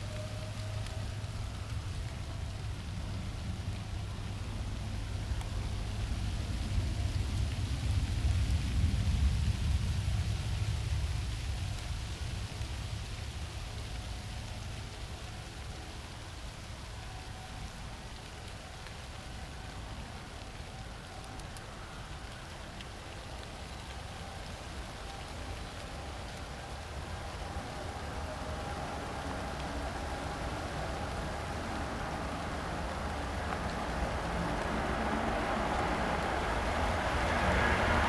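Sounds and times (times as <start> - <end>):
distant jet engine roar: 19.0 - 38.0.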